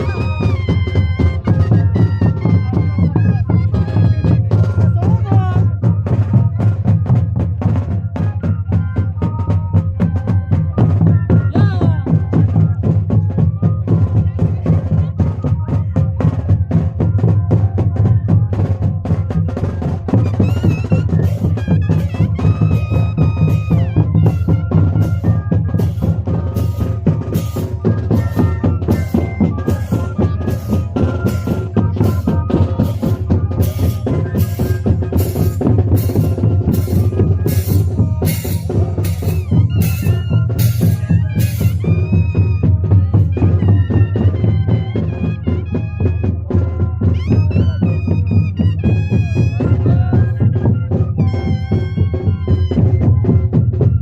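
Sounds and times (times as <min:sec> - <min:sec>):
cane flutes playing long tones: 0:00.0 - 0:15.4, 0:16.2 - 0:54.0
drums pounding: 0:00.0 - 0:54.0
sharp drum strokes: 0:18.6 - 0:45.1.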